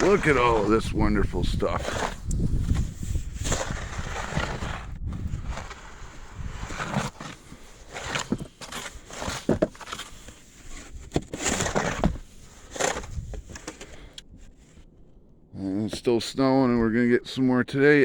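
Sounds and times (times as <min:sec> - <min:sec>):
footsteps crunching in snow: 0:00.0 - 0:14.0.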